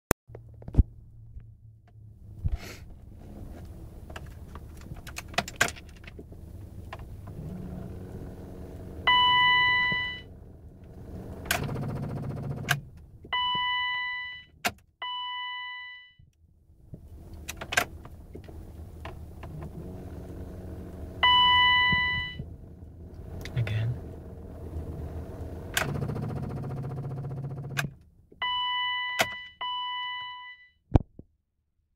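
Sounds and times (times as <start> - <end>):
ignition key clicking and jangling: 4.1 - 6.2.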